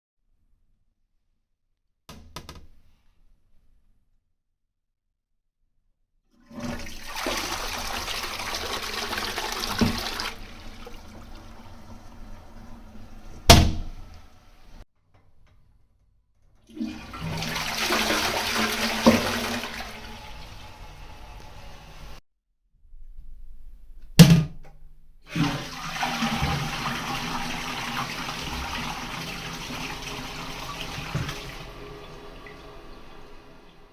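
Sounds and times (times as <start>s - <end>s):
toilet flushing: 6.4s - 14.8s, 16.6s - 22.2s, 25.3s - 33.9s.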